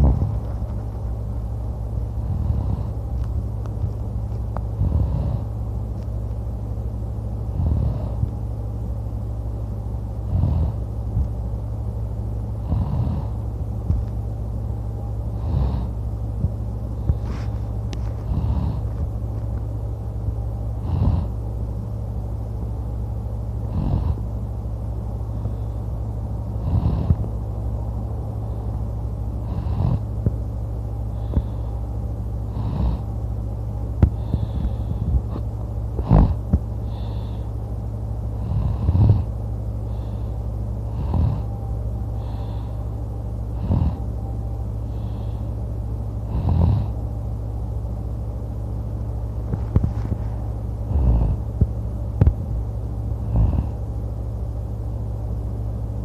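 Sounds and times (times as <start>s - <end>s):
steady low hum: 0.0s - 56.0s
man snoring loudly: 2.2s - 3.0s, 4.8s - 5.5s, 7.5s - 8.2s, 10.2s - 10.8s, 12.6s - 13.4s, 15.3s - 16.0s, 18.3s - 18.9s, 20.8s - 21.3s, 23.7s - 24.2s, 26.6s - 27.2s, 29.4s - 30.1s, 32.5s - 33.1s, 36.0s - 37.2s, 38.4s - 39.3s, 40.8s - 41.5s, 43.5s - 44.1s, 46.2s - 47.0s, 50.9s - 51.5s, 53.2s - 53.8s.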